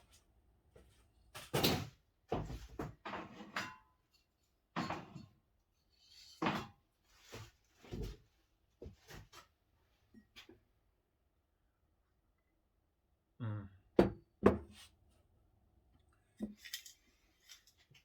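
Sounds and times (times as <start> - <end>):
items clunking on a workbench: 1.4 - 4.0, 4.7 - 5.4, 6.3 - 9.5, 14.0 - 14.8.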